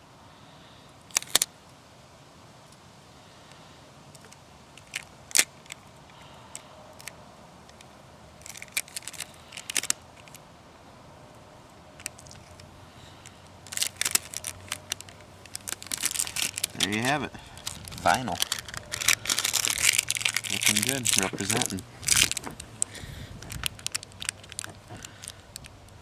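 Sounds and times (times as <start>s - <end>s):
tape peeling with crackles: 1.1s - 1.5s, 4.1s - 5.9s, 7.0s - 10.4s, 12.0s - 26.0s.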